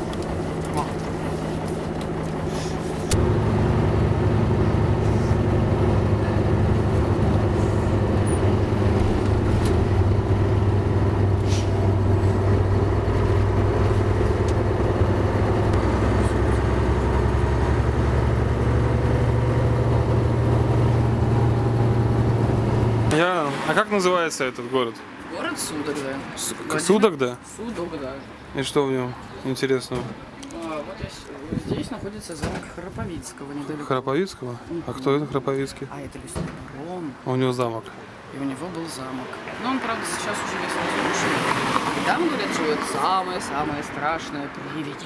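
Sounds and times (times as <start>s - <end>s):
bus engine droning: 0.0s - 24.1s.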